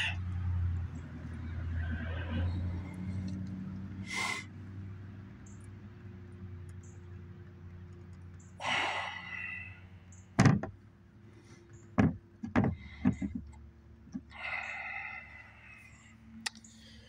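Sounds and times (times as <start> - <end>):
tools knocking and clunking: 10.4 - 10.8, 11.9 - 14.3.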